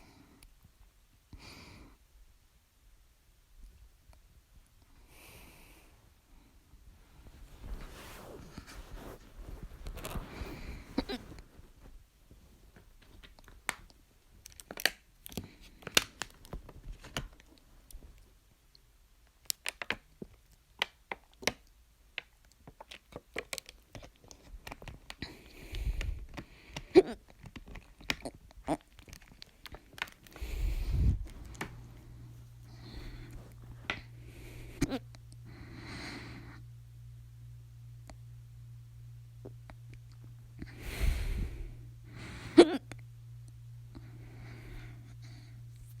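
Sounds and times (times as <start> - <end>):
breath puffs on microphone: 7.1 - 11.8, 30.3 - 34.8, 40.7 - 41.8.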